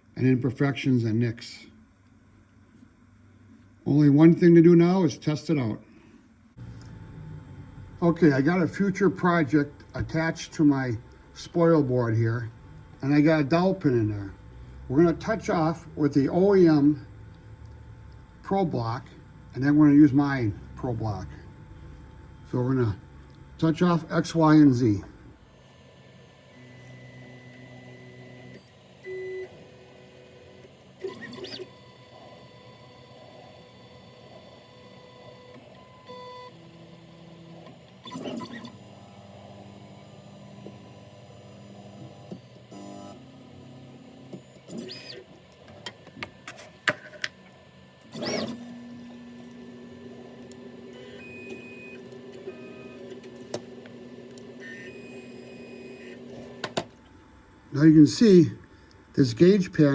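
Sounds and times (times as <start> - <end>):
slow steady motor hum: 6.3 - 57.7
stepper motors whining: 6.6 - 57.0.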